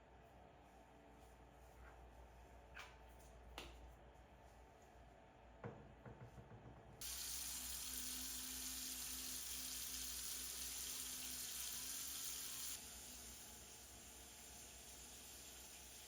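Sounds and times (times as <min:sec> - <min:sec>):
water running from a tap: 0:07.0 - 0:16.0.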